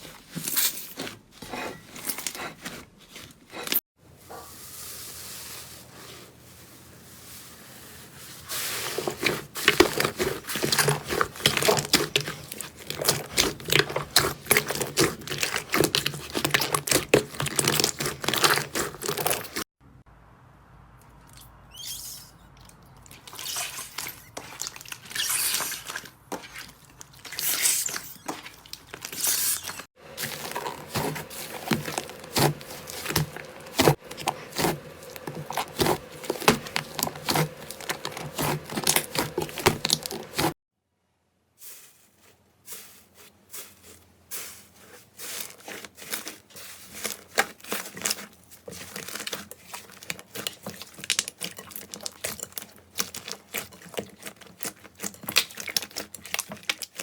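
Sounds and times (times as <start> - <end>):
slime squished by hand: 8.9 - 19.6, 23.0 - 40.5, 45.2 - 57.0.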